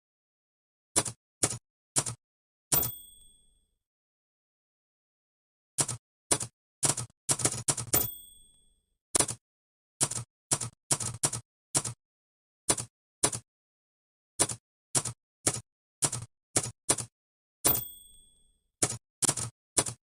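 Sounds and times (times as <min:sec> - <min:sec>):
typewriter keys striking: 0:01.0 - 0:02.2, 0:05.8 - 0:08.2, 0:09.2 - 0:09.4, 0:10.0 - 0:12.0, 0:12.7 - 0:13.4, 0:14.4 - 0:17.1, 0:18.8 - 0:20.0
typewriter bell ringing: 0:02.7 - 0:03.6, 0:07.8 - 0:08.9, 0:17.7 - 0:18.7.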